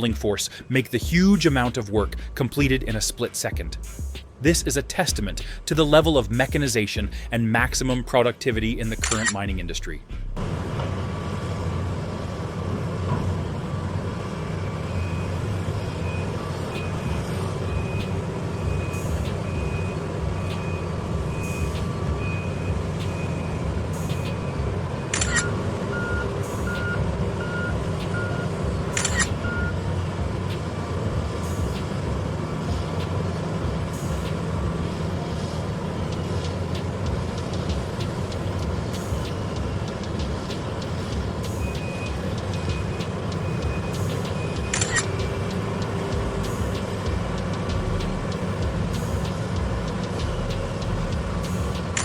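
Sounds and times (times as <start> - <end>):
heavy machinery engines droning: 0.0 - 52.0
reversing alarm beeping: 14.4 - 52.0
low-pitched beep: 16.0 - 29.8, 41.6 - 45.4.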